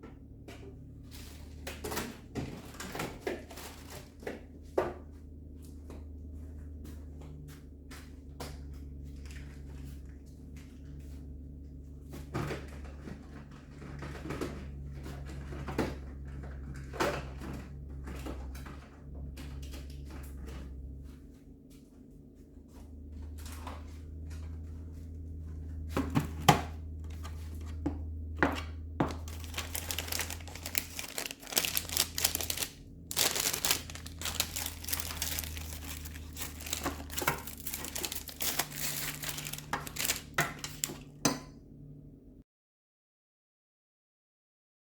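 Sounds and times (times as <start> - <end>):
low steady hum: 0.0 - 42.4
plastic crinkling and tearing: 29.0 - 41.1.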